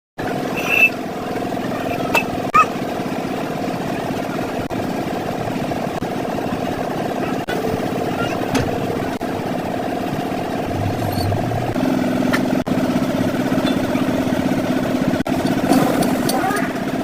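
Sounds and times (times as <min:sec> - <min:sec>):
engine idling: 0:00.2 - 0:17.0.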